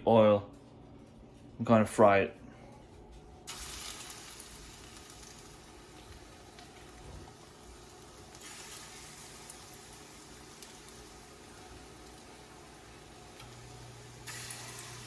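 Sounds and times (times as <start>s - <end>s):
batter sizzling in hot oil: 3.5s - 15.0s.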